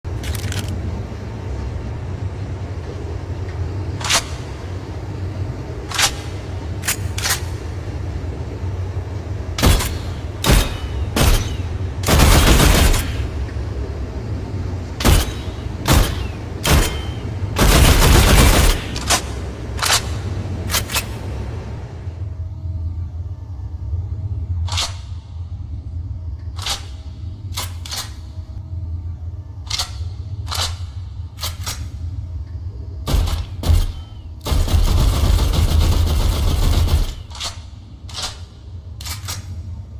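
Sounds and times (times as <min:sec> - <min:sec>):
steady low hum: 0:00.0 - 0:39.9
machine pistol firing: 0:09.6 - 0:13.3, 0:15.0 - 0:20.1, 0:33.1 - 0:37.6
machine pistol gunfire: 0:17.6 - 0:19.0.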